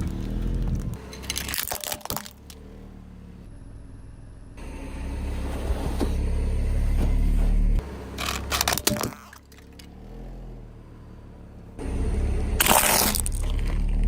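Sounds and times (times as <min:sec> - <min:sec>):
objects crunching under car tyre: 0:00.0 - 0:02.6, 0:12.6 - 0:14.0
car engine rumbling: 0:00.0 - 0:14.0.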